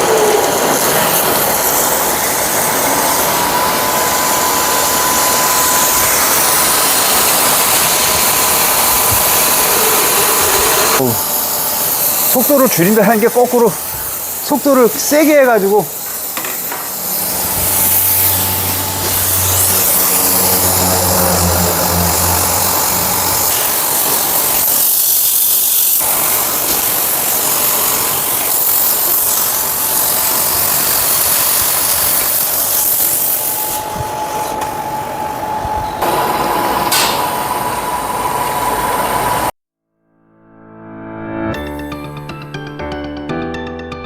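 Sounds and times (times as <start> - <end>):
cutting torch hissing: 0.0 - 39.5
low hum: 16.9 - 24.0.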